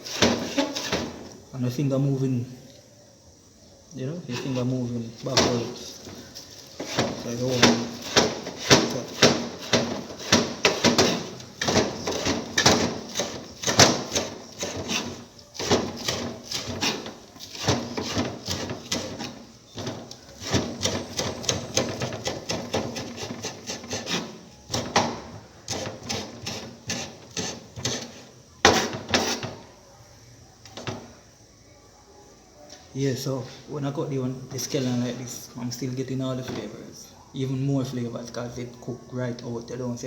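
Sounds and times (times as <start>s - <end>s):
knife chopping on cutting board: 6.8s - 29.5s.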